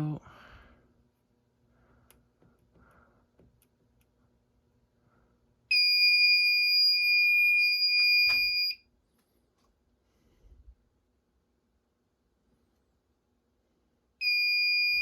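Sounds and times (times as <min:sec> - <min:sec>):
fire alarm tone: 0:05.7 - 0:08.8, 0:14.2 - 0:15.0.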